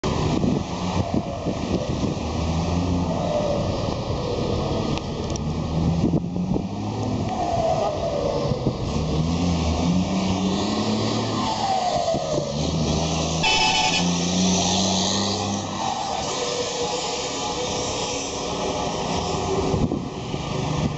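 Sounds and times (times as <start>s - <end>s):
falling whistle: 13.4s - 14.1s.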